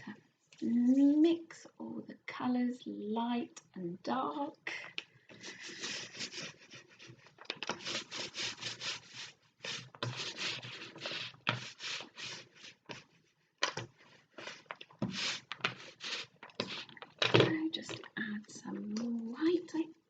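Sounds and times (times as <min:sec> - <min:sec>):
paint rubbing on cardboard: 0:05.4 - 0:13.2, 0:14.4 - 0:17.0.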